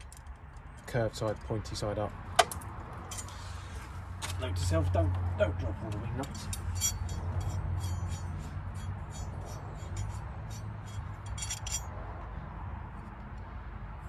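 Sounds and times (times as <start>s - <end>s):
small metal parts clinking: 6.2s - 11.9s.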